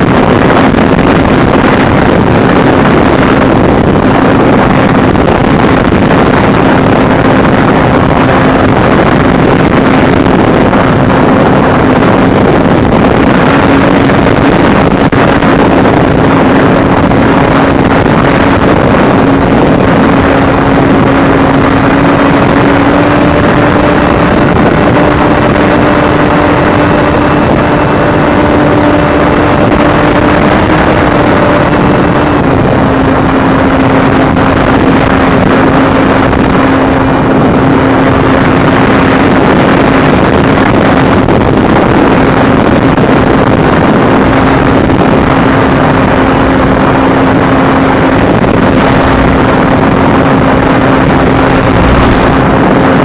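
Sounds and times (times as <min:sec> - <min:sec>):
drone motors and propellers: 0:00.0 - 0:53.0.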